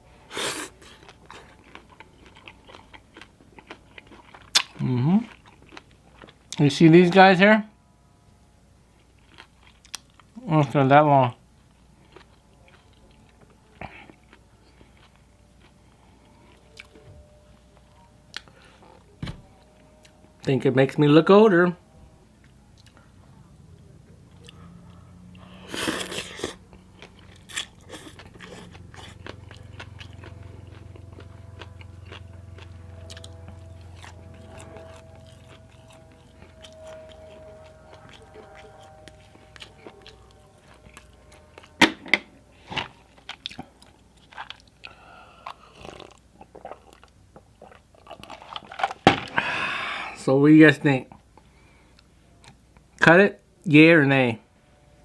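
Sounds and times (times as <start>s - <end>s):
chewing and crunching: 0.5s - 7.0s, 8.9s - 10.8s, 11.6s - 20.5s, 22.3s - 41.8s, 42.4s - 49.5s.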